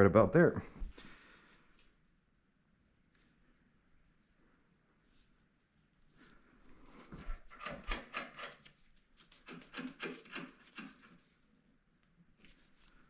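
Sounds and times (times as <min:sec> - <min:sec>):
hand tool clicks and knocks: 0:07.5 - 0:08.7, 0:09.4 - 0:11.2.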